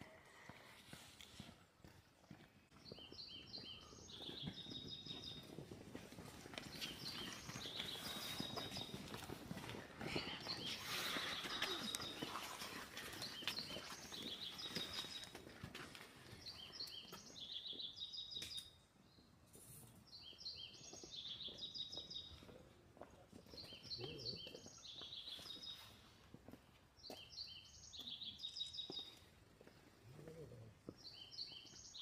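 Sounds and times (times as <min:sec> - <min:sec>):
outdoor background noise: 0:00.0 - 0:32.0
small bird singing: 0:02.8 - 0:05.7, 0:06.7 - 0:09.3, 0:10.1 - 0:15.4, 0:16.4 - 0:19.3, 0:20.1 - 0:22.6, 0:23.5 - 0:25.9, 0:27.0 - 0:29.8, 0:30.9 - 0:32.0.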